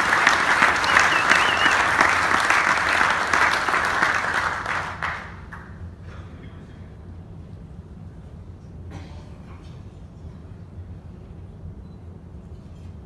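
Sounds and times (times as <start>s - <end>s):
audience applauding: 0.0s - 5.8s.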